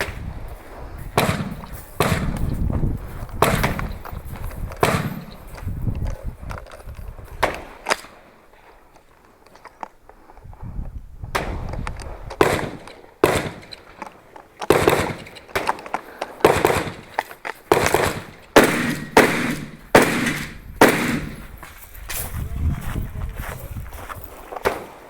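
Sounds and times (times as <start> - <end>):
gunshots with echo: 1.1 - 2.6, 3.4 - 4.1, 4.7 - 5.6, 12.4 - 13.8, 14.7 - 21.6.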